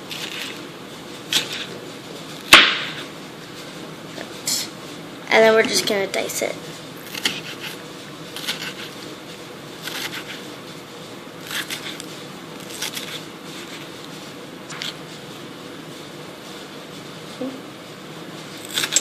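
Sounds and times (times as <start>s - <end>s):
knife dicing onion on board: 7.0s - 7.8s, 8.4s - 8.9s, 9.8s - 10.4s.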